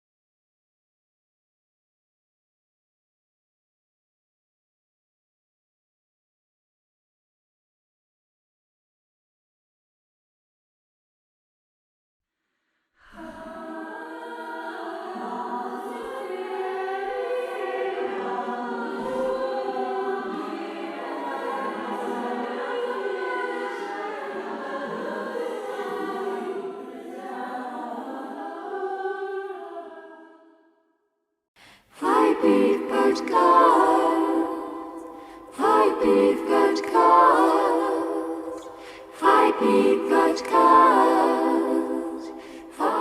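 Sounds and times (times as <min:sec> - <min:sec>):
choir singing: 0:13.0 - 0:30.8, 0:31.9 - 0:43.0
vocal clip: 0:31.6 - 0:43.0.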